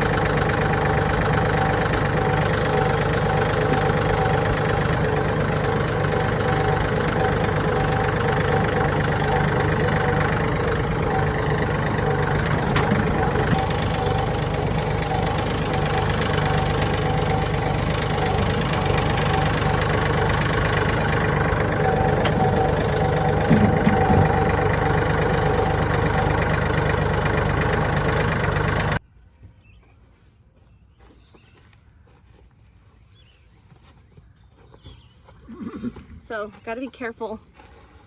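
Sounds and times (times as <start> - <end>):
vehicle engine running: 0.0 - 29.0.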